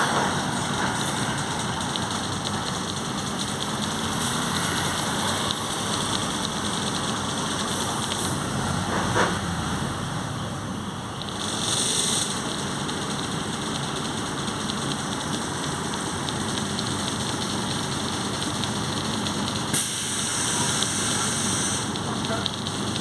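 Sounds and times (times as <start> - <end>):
bus transmission roaring: 0.0 - 23.0
air hiss: 11.4 - 12.4, 19.7 - 21.9.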